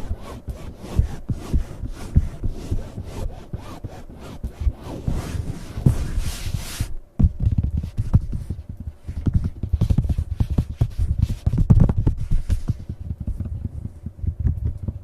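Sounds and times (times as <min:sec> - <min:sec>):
close-miked scratching: 0:00.0 - 0:15.0
soft low thumps: 0:00.0 - 0:15.0.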